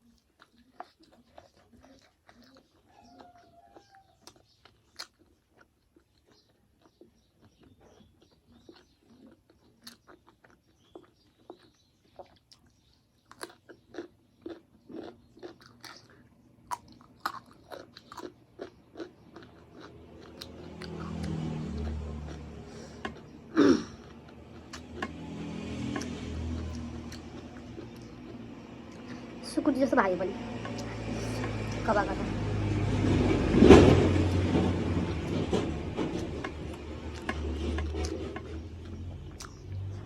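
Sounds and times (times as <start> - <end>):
close chewing with wet mouth clicks: 0.0 - 29.4, 36.2 - 40.0
low hum: 20.0 - 40.0.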